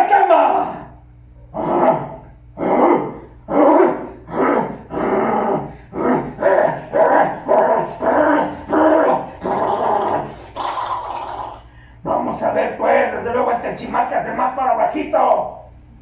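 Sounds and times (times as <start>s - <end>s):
man making animal-like calls: 0.0s - 12.6s.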